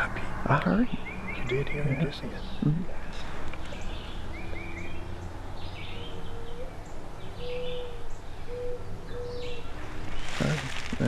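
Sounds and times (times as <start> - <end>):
songbirds chirping: 0.0 - 11.0
owl hooting: 6.0 - 9.7.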